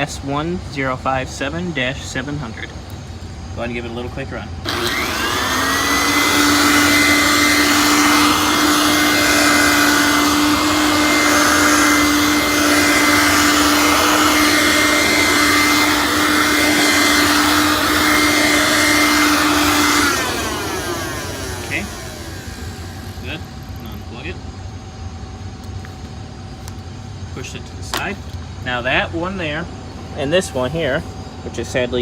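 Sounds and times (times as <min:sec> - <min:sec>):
vacuum cleaner motor whining: 0:04.6 - 0:24.0.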